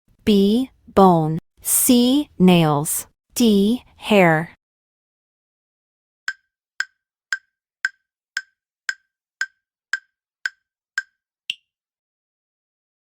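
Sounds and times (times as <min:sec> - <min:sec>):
countdown timer ticking: 0:06.3 - 0:11.6.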